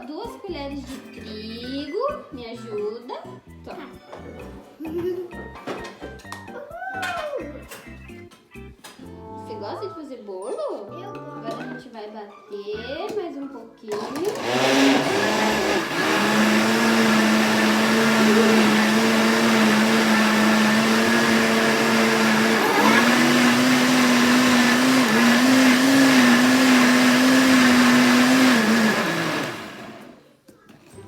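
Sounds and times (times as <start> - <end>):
blender running: 13.9 - 30.2.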